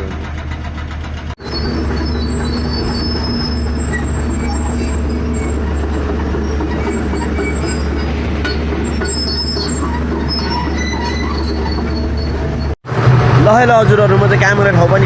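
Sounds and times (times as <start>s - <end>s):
diesel engine droning: 0.0s - 15.0s
steel tracks squealing: 0.0s - 15.0s.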